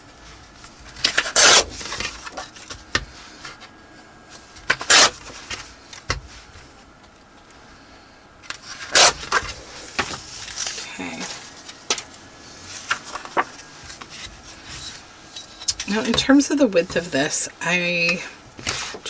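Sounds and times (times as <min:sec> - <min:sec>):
paper rustling: 0:08.6 - 0:17.1.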